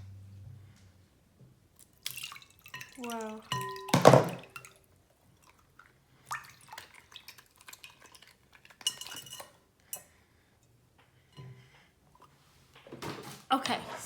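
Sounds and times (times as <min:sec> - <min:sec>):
liquid dripping: 0:01.7 - 0:09.6.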